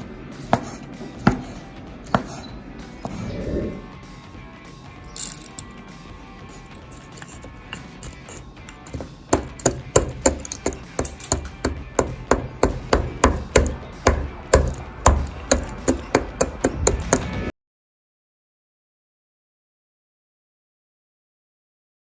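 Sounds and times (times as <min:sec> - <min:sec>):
knife chopping on cutting board: 0:00.5 - 0:01.5.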